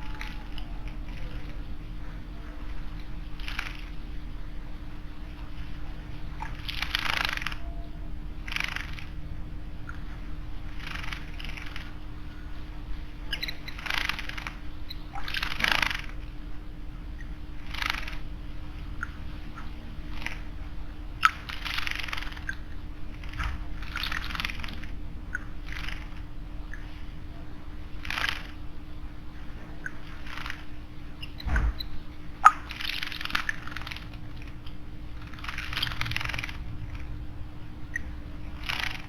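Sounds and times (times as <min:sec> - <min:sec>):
birds splashing in water: 0:00.0 - 0:07.6
wing flutters: 0:00.0 - 0:39.0.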